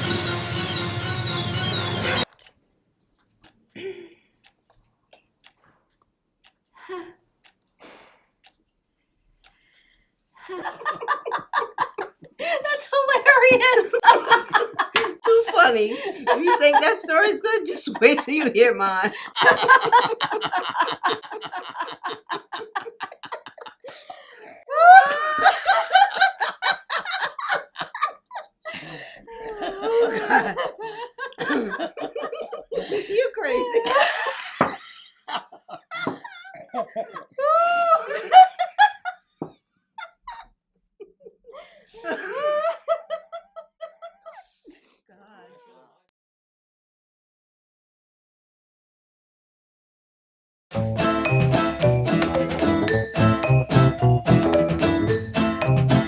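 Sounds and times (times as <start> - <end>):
women laughing: 10.4 - 39.2, 40.0 - 44.9
high-pitched whoop of laughter: 24.7 - 26.0, 37.4 - 38.4.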